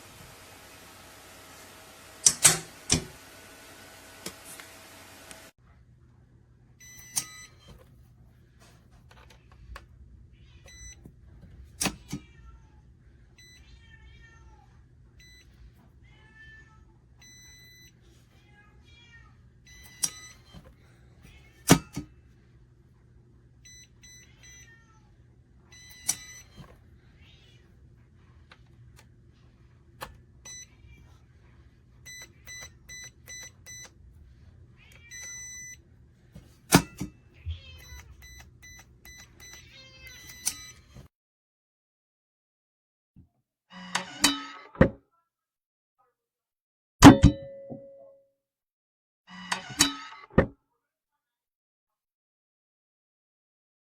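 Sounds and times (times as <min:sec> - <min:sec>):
keypad beeps: 0:06.8 - 0:07.8, 0:10.7 - 0:11.0, 0:17.2 - 0:17.9, 0:19.7 - 0:20.6, 0:25.8 - 0:26.7, 0:30.4 - 0:30.7, 0:32.0 - 0:33.9, 0:34.9 - 0:35.8, 0:37.7 - 0:41.0
cat meowing: 0:13.4 - 0:14.7, 0:37.4 - 0:38.3.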